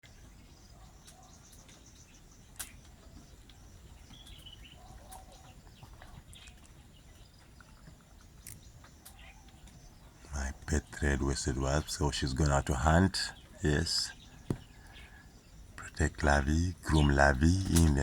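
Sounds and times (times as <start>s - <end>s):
bird chirps: 0.0s - 18.0s
sharp clicks: 17.5s - 18.0s.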